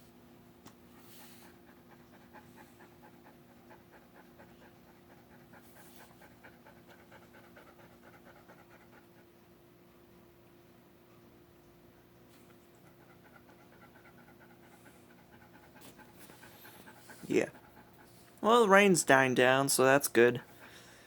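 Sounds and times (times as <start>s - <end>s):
dog panting: 0.7s - 9.6s, 12.4s - 19.4s, 20.1s - 21.0s.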